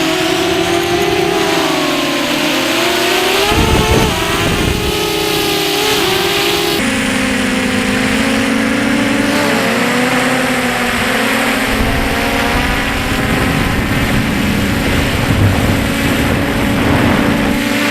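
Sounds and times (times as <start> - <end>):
drone propellers whining: 0.0 - 17.9
low rumble: 11.5 - 17.9.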